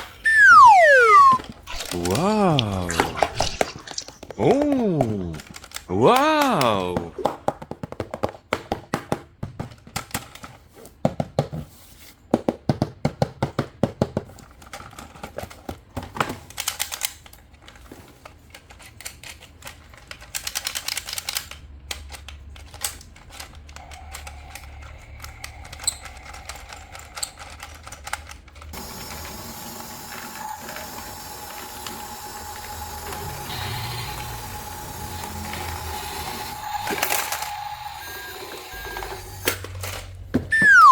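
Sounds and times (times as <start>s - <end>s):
plastic toy parts clicking: 0.2s - 6.8s, 9.8s - 10.6s, 14.4s - 28.7s.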